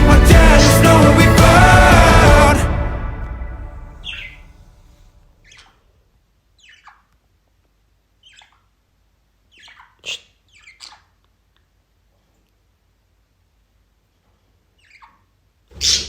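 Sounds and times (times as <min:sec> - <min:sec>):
budgerigar calling: 0:04.0 - 0:04.5, 0:05.4 - 0:05.8, 0:06.6 - 0:07.1, 0:08.2 - 0:08.7, 0:09.5 - 0:11.2, 0:14.8 - 0:16.0.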